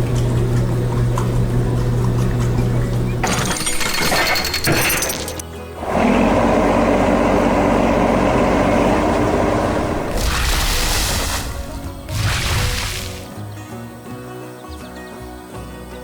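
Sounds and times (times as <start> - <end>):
background music: 9.8 - 16.0
shattering sound effect: 10.0 - 13.4.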